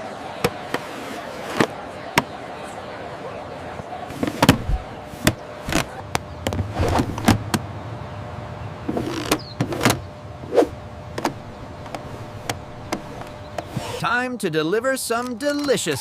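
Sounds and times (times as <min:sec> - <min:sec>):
faint low hum: 0:00.0 - 0:15.5
sharp clicks and knocks: 0:11.2 - 0:13.8.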